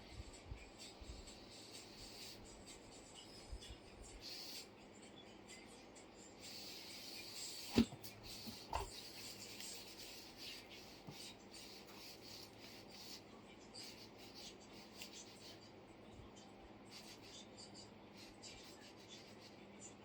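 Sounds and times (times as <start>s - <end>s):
low background hum: 0.0s - 20.0s
faint scratching and rustling: 6.8s - 15.7s.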